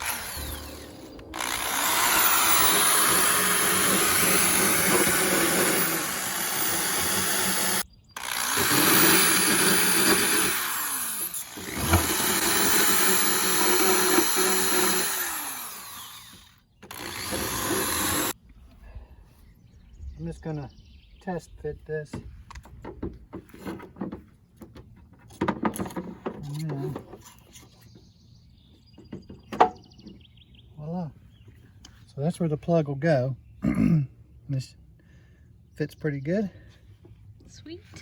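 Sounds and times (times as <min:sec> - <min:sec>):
power tool whine: 0:00.0 - 0:18.4.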